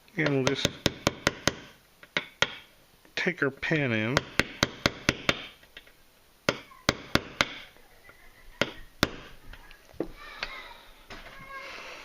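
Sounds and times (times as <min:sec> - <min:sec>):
hammer tapping a pin punch: 0:00.2 - 0:02.7, 0:04.2 - 0:05.5, 0:06.5 - 0:07.7.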